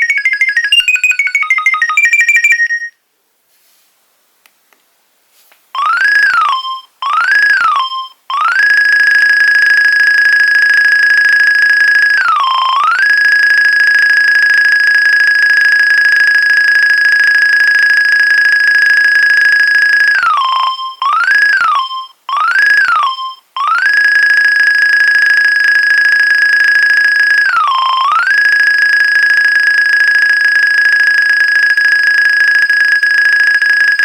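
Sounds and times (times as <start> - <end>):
buzzy electronic ringtone: 0.0 - 2.9.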